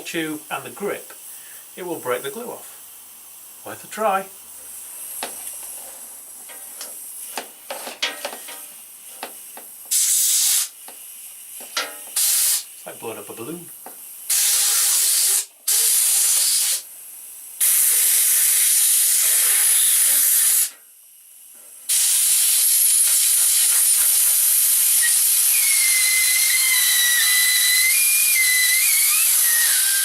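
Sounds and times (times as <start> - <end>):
compressed air hissing: 0.0 - 30.0
wavering air whistle: 24.9 - 30.0.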